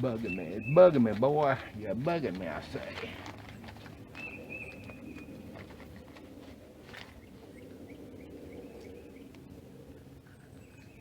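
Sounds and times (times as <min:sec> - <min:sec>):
bird calling: 0:00.0 - 0:06.0.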